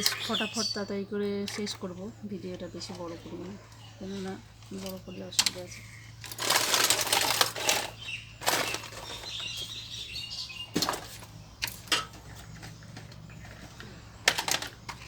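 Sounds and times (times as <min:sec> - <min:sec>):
toys rustling and knocking: 0:04.6 - 0:09.8, 0:10.7 - 0:15.0.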